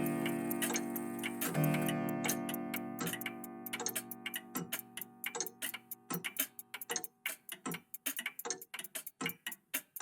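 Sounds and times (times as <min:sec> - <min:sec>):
clocks ticking: 0:00.0 - 0:10.0.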